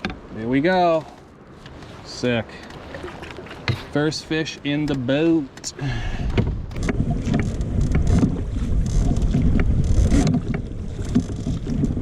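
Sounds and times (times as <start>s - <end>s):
light knocks and clicks in canoe: 0.0s - 12.0s
wind buffeting microphone: 6.0s - 12.0s.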